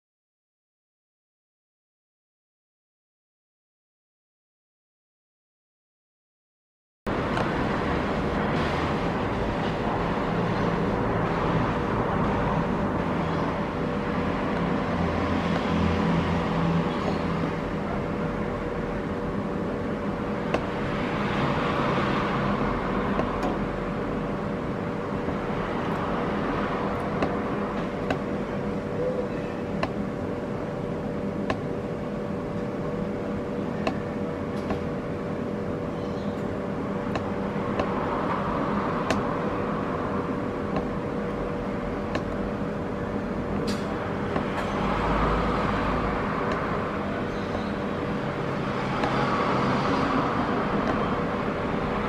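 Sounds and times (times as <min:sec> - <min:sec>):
traffic hum: 0:07.1 - 0:52.0
vehicles passing: 0:07.1 - 0:52.0
faint regular clicks: 0:39.0 - 0:39.3.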